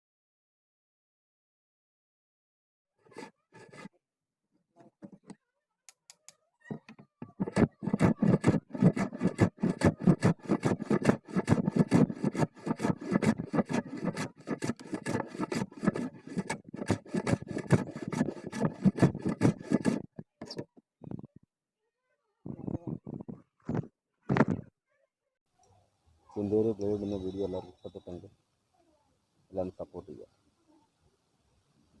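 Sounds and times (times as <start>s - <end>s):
hand plane scraping wood: 3.0s - 3.9s, 6.7s - 20.7s.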